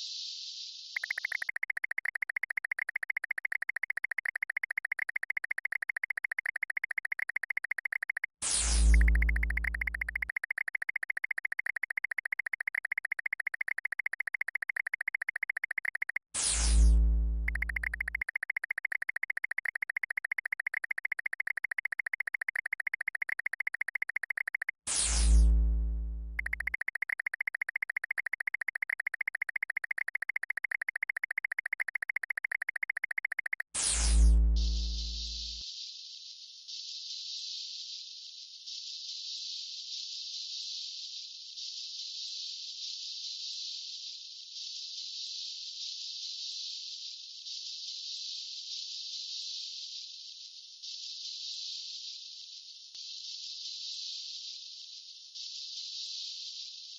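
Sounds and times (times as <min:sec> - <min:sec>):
pulsing buzzy synth tone: 0:01.0 - 0:35.6.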